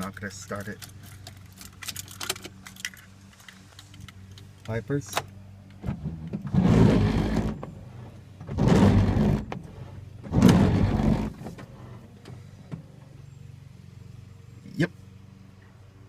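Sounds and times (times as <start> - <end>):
windshield wipers swishing: 5.8 - 12.0.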